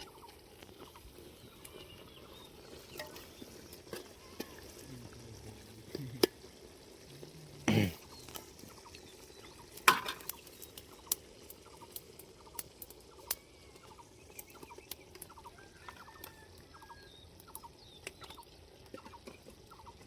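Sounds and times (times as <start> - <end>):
chickens clucking: 0.0 - 5.2, 8.0 - 20.0.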